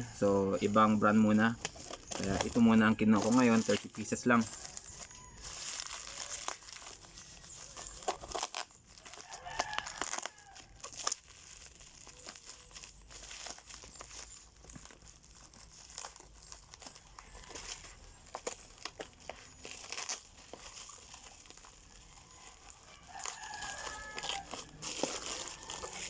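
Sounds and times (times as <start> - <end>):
rooster crowing: 0.0 - 0.4, 4.5 - 7.0, 9.0 - 10.8, 21.8 - 26.0
plastic packaging crinkling: 0.0 - 26.0
clicks and rustles: 0.1 - 26.0.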